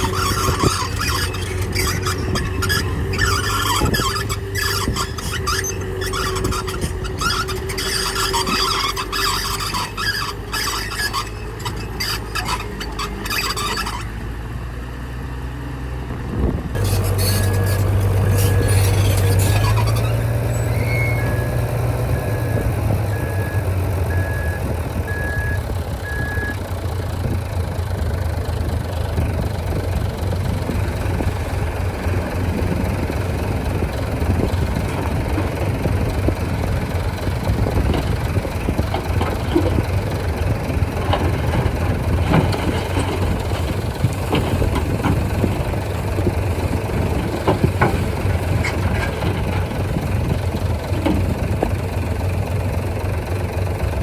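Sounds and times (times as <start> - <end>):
heavy diesel engine running: 0.0 - 54.0
reversing alarm beeping: 22.2 - 26.6
clanks and knocks: 41.0 - 51.8.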